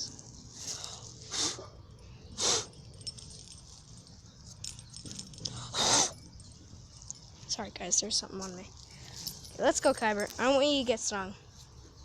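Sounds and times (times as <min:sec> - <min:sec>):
faint light jingling: 0:01.9 - 0:11.3.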